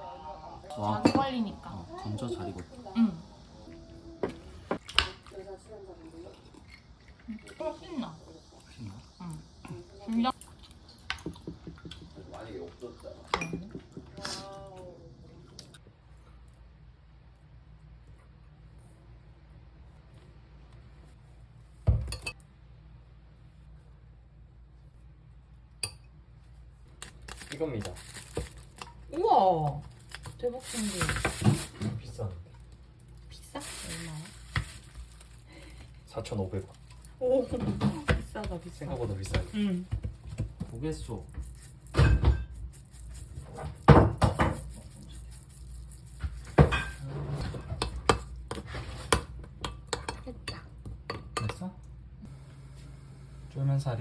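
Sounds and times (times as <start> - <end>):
kitchen items knocking and clattering: 0.8 - 1.5, 11.1 - 12.2, 29.8 - 32.3, 37.3 - 45.0, 46.1 - 50.2.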